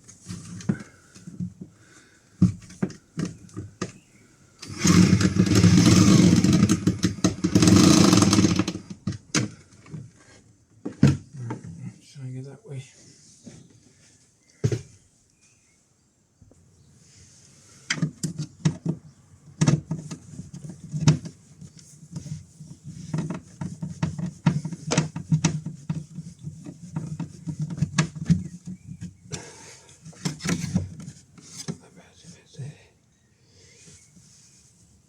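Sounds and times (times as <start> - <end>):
hands handling cable and hose: 0.0 - 4.0, 17.8 - 31.9.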